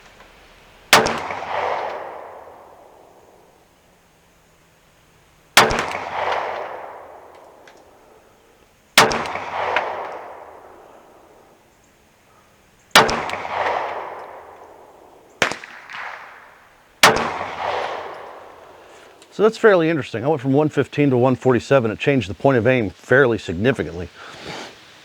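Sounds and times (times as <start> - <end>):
pistol shots with rolling echo: 0.9 - 3.6, 5.5 - 8.3, 9.0 - 11.6, 12.9 - 19.2
faint sharp crack: 13.0 - 19.4.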